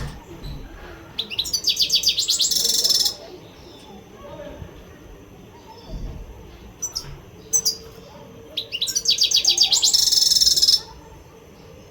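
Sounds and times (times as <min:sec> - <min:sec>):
bird chirps: 0:01.2 - 0:04.0, 0:06.8 - 0:11.0
bird trilling song: 0:01.2 - 0:04.1, 0:06.8 - 0:11.0.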